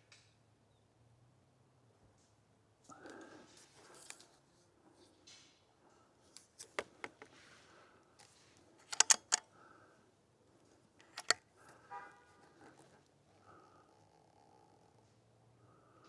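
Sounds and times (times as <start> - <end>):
air rifle mechanical clicks: 8.2 - 9.7, 11.0 - 11.8.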